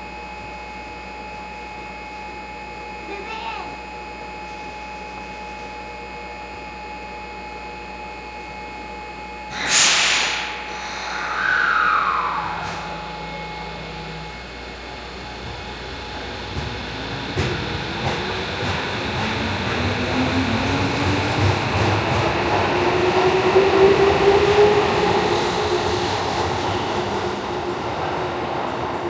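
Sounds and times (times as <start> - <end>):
loud train hiss: 9.5 - 14.3
short falling tone: 9.5 - 14.8.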